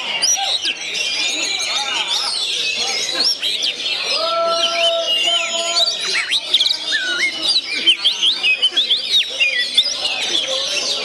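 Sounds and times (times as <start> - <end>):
magpie-robin singing: 4.6 - 11.0.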